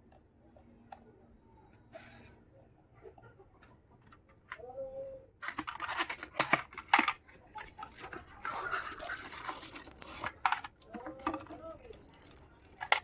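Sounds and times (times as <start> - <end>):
plastic packaging crinkling: 5.6 - 13.0.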